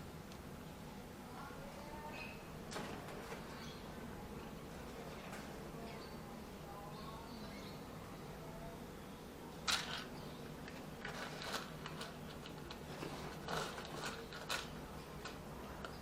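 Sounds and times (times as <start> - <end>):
cat crunching food: 9.7 - 16.0.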